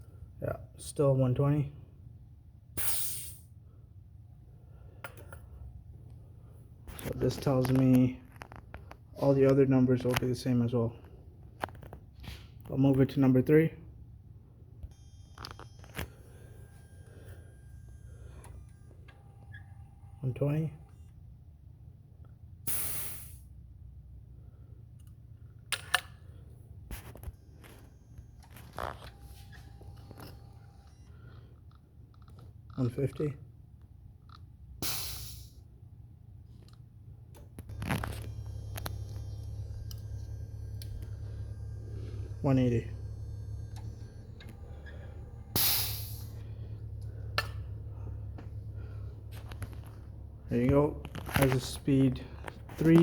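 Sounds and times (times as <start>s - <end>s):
steady low hum: 0.0s - 53.0s
compressed air hissing: 2.8s - 3.4s, 22.7s - 23.4s, 34.8s - 35.6s, 44.6s - 48.1s
air hissing from tester: 34.8s - 35.6s, 38.3s - 48.5s.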